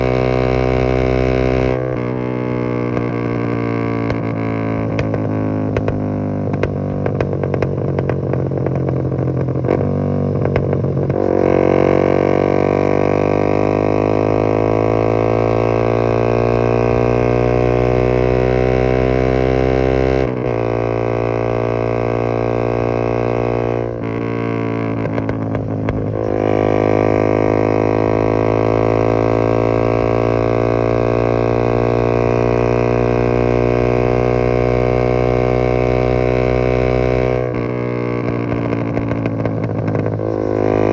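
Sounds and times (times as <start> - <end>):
motorcycle engine revving: 0.0 - 40.9
exhaust crackles: 23.9 - 29.2, 37.3 - 40.9.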